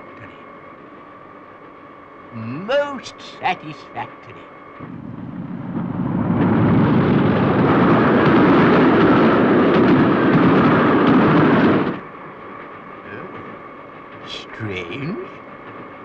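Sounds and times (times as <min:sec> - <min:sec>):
speeding train rushing rumble: 0:00.0 - 0:16.0.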